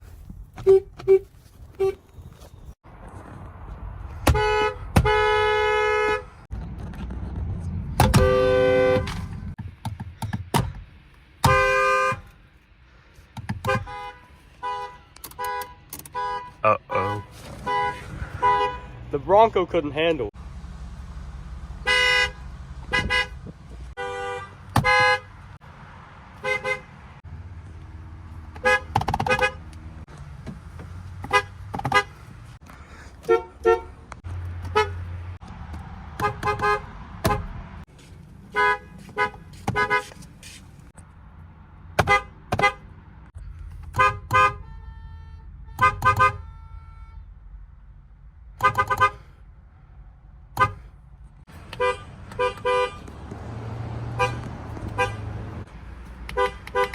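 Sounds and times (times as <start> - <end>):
car horns honking: 0.6 - 2.1, 4.2 - 6.5, 8.0 - 9.6, 11.4 - 12.4, 13.5 - 20.3, 21.7 - 25.6, 26.4 - 27.2, 28.5 - 29.9, 31.1 - 35.4, 36.1 - 37.8, 38.4 - 40.2, 42.0 - 43.0, 43.7 - 47.6, 48.5 - 49.4, 50.5 - 56.9.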